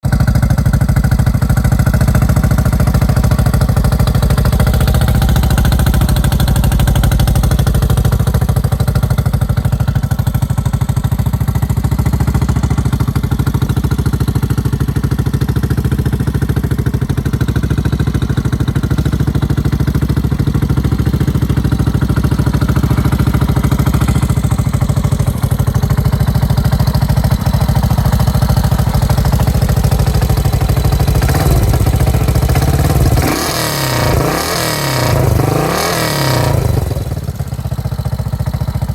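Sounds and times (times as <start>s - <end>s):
motorcycle engine idling: 0.0s - 38.9s.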